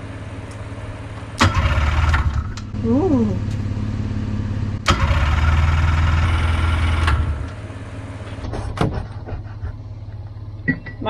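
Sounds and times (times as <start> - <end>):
low hum: 0.0 - 11.0
snowmobile engine cranking: 4.8 - 7.5.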